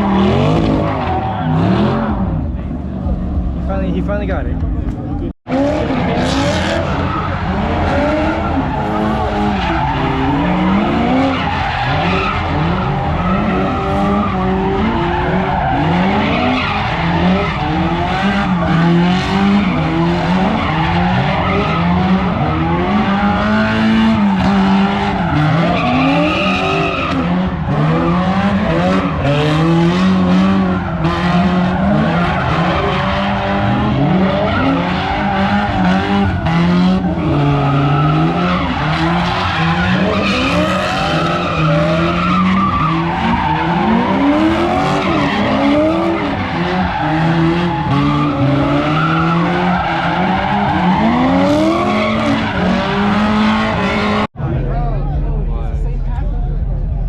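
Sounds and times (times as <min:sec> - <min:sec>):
car engine revving: 0:00.0 - 0:57.0
tyres screeching: 0:06.4 - 0:22.5.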